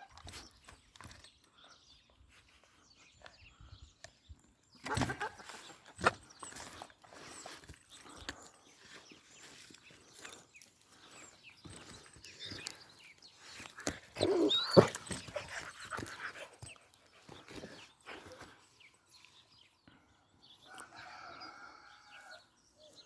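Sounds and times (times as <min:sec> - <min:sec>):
dogs whining and yelping: 0:13.5 - 0:18.6.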